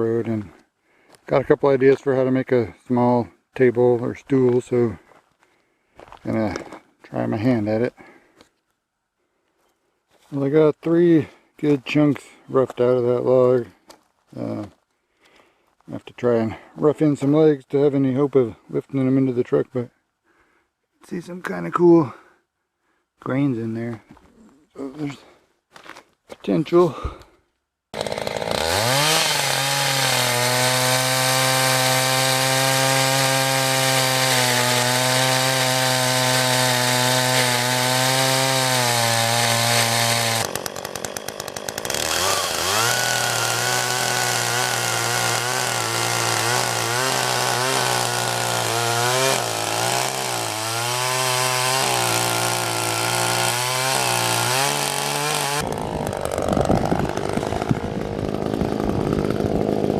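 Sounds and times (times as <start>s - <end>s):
chainsaw cutting wood: 27.9s - 59.9s.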